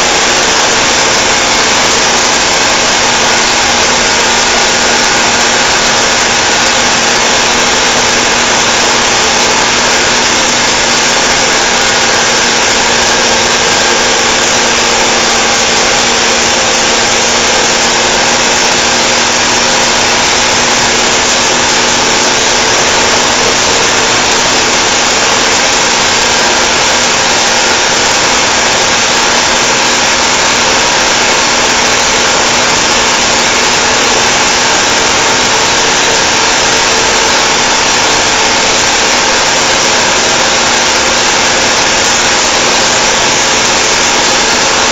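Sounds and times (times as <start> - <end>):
truck diesel engine droning: 0.0 - 44.9.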